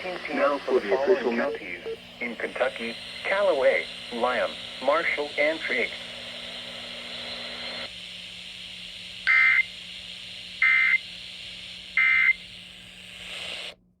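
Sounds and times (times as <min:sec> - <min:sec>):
radio hiss: 0:00.0 - 0:07.9
faint hum: 0:00.0 - 0:14.0.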